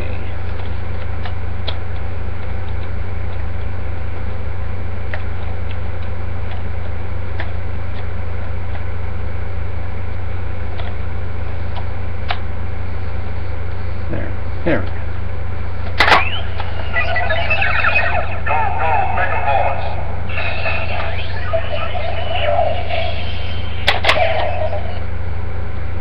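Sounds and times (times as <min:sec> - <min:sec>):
low electrical hum: 0:00.0 - 0:26.0
sharp plastic clicks: 0:00.5 - 0:03.7.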